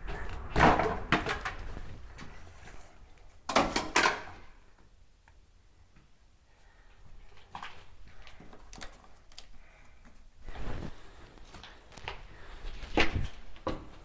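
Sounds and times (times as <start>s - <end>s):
broken masonry clattering: 3.5s - 4.5s.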